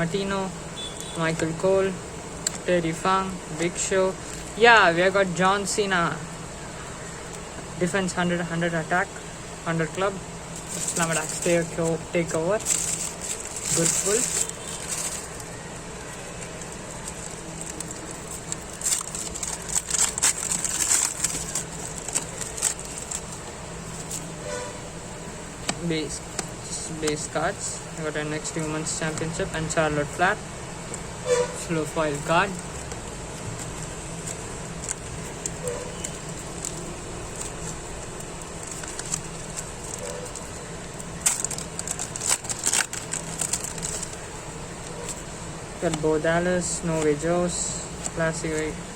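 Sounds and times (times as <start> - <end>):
foil packets crinkling: 9.7 - 29.9, 31.6 - 48.9
cards being handled: 9.8 - 29.7, 30.9 - 48.8.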